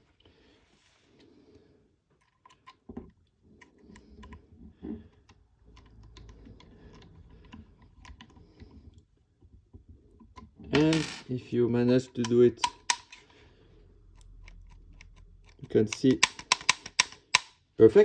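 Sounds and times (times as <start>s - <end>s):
small parts clicking and tapping: 2.2s - 9.1s, 12.0s - 13.4s, 14.0s - 17.7s.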